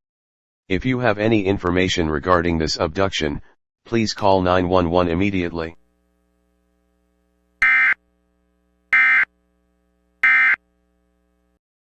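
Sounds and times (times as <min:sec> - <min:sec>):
harsh electronic data warble: 0:07.6 - 0:08.0, 0:08.9 - 0:09.3, 0:10.2 - 0:10.6.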